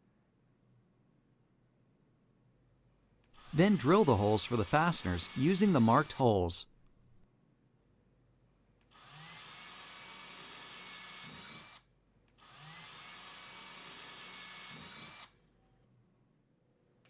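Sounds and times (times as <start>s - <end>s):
power drill boring holes: 3.4s - 6.2s, 8.9s - 11.8s, 12.4s - 15.3s.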